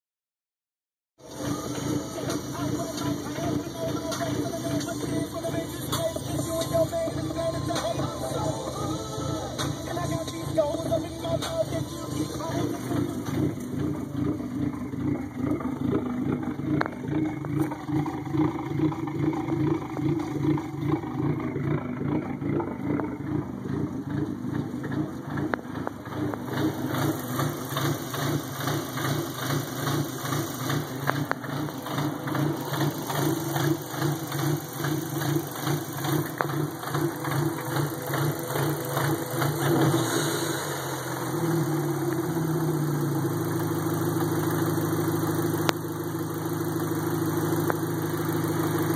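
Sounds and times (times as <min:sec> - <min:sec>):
car engine idling rough: 0:01.2 - 0:48.9.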